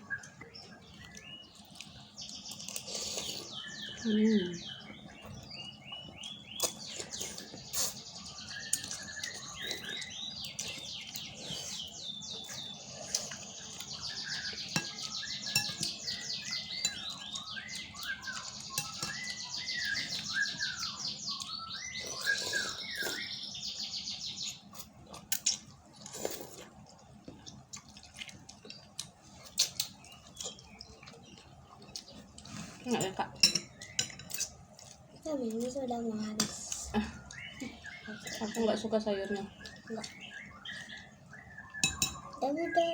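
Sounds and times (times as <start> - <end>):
small birds chirping: 0.0 - 42.9
eating utensils clinking: 13.1 - 20.2, 25.2 - 37.6, 41.7 - 42.9.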